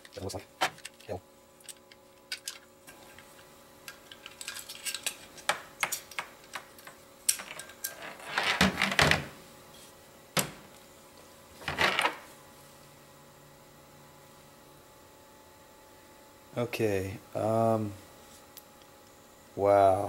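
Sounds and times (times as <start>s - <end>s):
small metal parts clinking: 0.8s - 2.6s, 4.0s - 6.6s
metal parts rattling: 4.1s - 5.5s.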